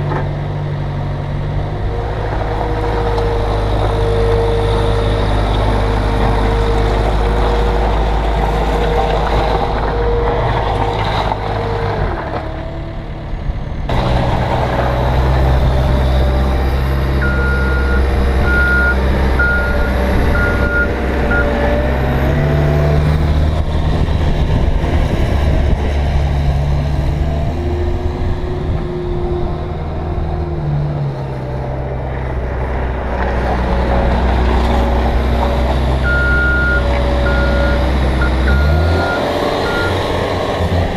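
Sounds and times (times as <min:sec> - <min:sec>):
skid steer diesel engine working: 0:00.0 - 0:40.9
backup alarm beeping: 0:17.2 - 0:21.6, 0:36.1 - 0:40.0.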